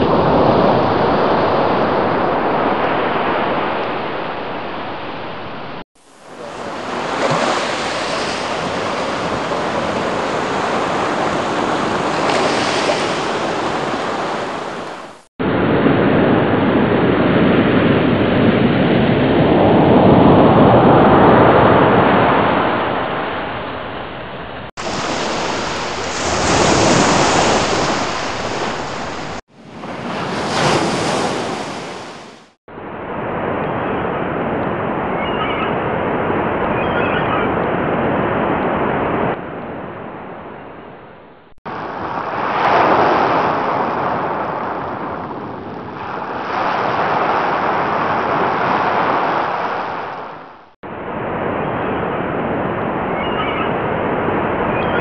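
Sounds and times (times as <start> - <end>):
water rushing like surf: 0.0 - 15.3, 24.8 - 32.6, 41.7 - 51.6.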